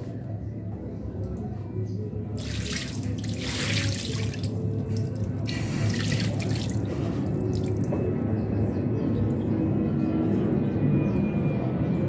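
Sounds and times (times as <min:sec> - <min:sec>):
water running and splashing: 0:02.4 - 0:07.9.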